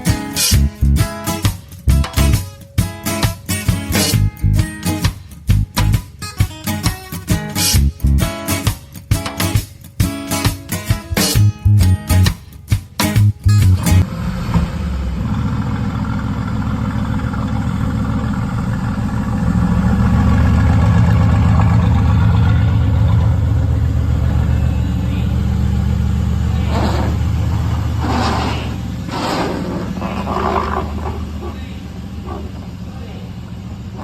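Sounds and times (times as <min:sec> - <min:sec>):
car engine idling: 0:00.0 - 0:06.2, 0:11.4 - 0:34.0
short noises: 0:26.5 - 0:31.7.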